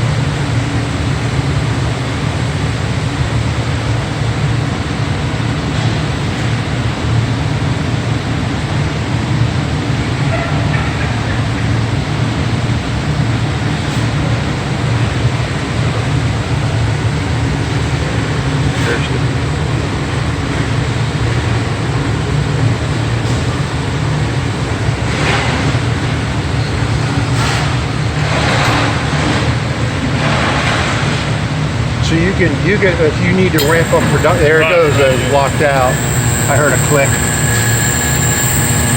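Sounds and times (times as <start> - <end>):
factory machinery hum: 32.3 - 38.9
faint voices: 33.6 - 38.9.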